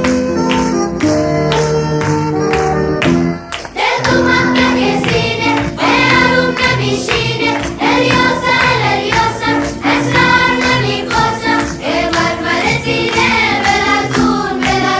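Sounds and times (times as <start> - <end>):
instrumental tune: 0.0 - 14.9
voices singing: 3.7 - 14.9.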